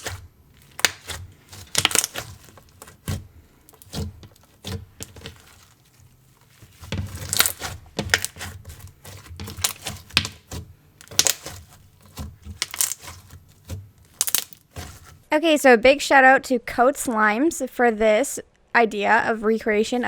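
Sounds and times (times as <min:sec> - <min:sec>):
slime squished by hand: 0:00.0 - 0:15.2.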